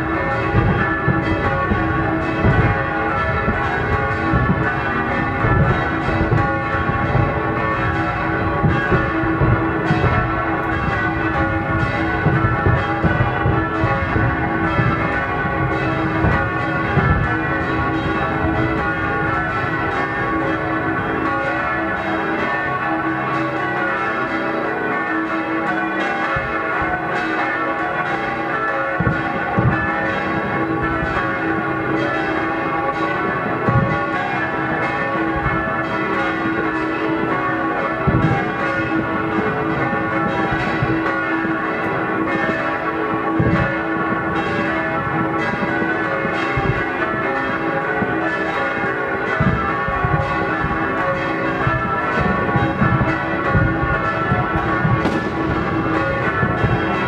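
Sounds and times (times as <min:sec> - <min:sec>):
firework bangs and rumble: 0:00.0 - 0:22.4, 0:29.0 - 0:32.4, 0:33.2 - 0:35.8, 0:38.0 - 0:41.1, 0:43.4 - 0:57.0
church bells pealing: 0:00.0 - 0:57.0.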